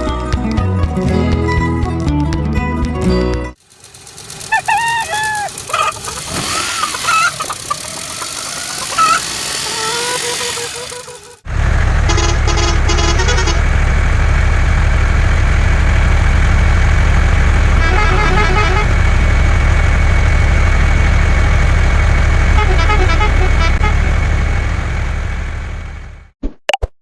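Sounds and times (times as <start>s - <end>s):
heavy vehicle engine rumbling: 3.5s - 26.4s
vehicle horn tooting: 12.0s - 13.7s, 17.7s - 19.0s, 22.6s - 24.2s.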